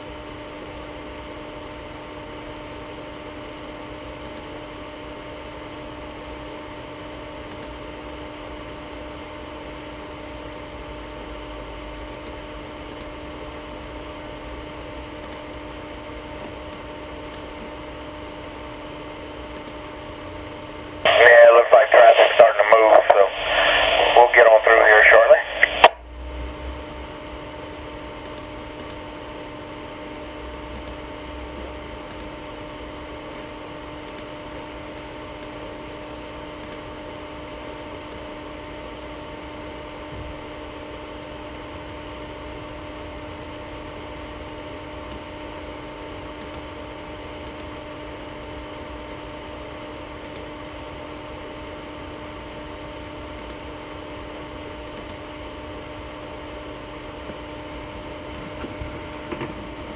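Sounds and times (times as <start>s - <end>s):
electrical hum: 0.0s - 59.9s
radio static hiss: 21.1s - 26.0s.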